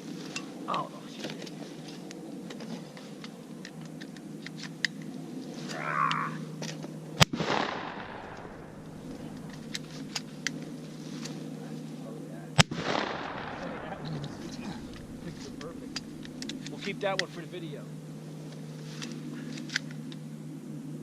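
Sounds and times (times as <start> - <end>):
shotgun blast with echo: 7.2 - 9.7, 12.6 - 16.2.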